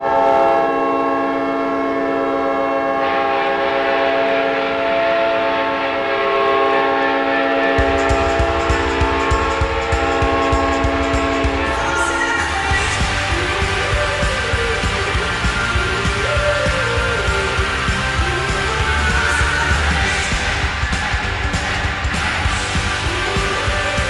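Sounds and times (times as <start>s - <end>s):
multi-tone goal horn blast: 0.0s - 24.0s
crowd cheering: 1.5s - 24.0s
pounding music beat: 7.7s - 24.0s.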